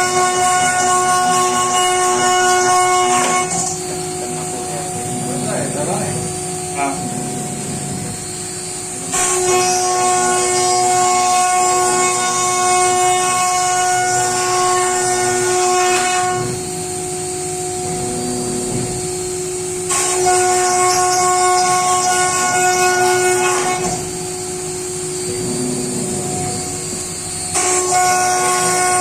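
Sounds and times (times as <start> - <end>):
router spindle whining cutting wood: 0.0 - 29.0.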